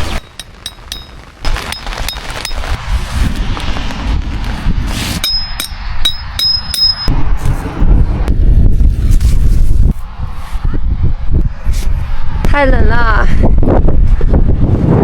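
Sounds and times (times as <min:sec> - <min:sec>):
hammer striking metal stakes: 0:00.0 - 0:02.8, 0:05.2 - 0:07.2
wind buffeting microphone: 0:00.2 - 0:15.0.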